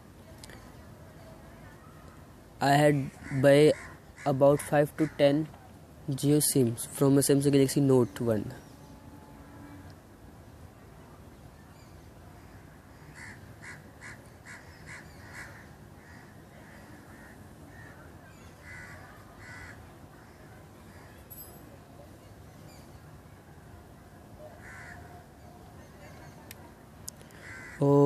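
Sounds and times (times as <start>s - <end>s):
low background hum: 0.0s - 28.0s
faint bird calling: 3.0s - 5.7s, 11.6s - 21.3s, 24.4s - 26.5s, 27.2s - 28.0s.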